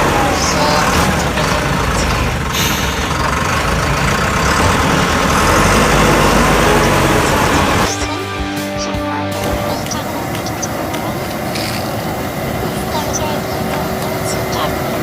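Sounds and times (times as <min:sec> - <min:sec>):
heavy vehicle engine running: 0:00.0 - 0:15.0
music with held tones: 0:06.0 - 0:11.8.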